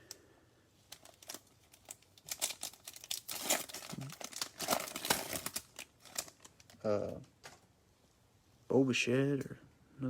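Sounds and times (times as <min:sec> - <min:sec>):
packaging crinkling and tearing: 0:00.9 - 0:07.6.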